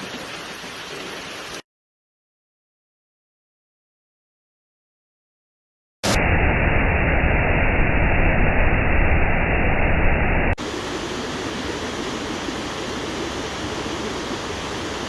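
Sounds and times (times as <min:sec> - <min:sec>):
waterfall rushing: 0:10.6 - 0:15.0.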